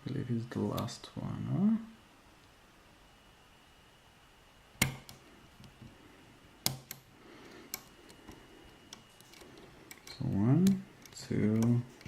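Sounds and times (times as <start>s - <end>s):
lock picking metallic clicks: 8.9s - 12.0s.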